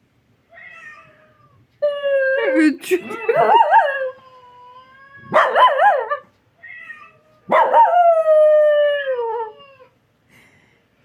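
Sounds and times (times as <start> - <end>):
dog howling: 1.8 - 4.4, 7.5 - 9.9.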